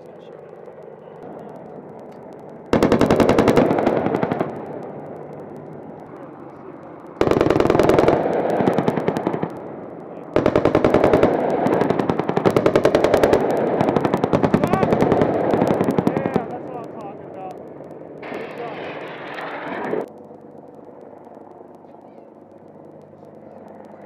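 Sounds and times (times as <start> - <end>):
steady rumbling noise: 0.0 - 24.0
automatic gunfire bursts: 2.7 - 5.0, 7.2 - 9.6, 10.4 - 16.5.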